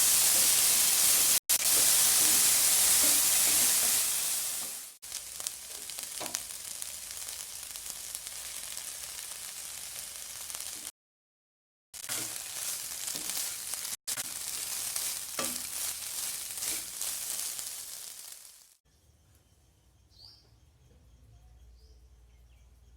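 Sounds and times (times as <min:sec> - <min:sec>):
food sizzling in hot oil: 0:00.0 - 0:10.9, 0:12.0 - 0:18.8.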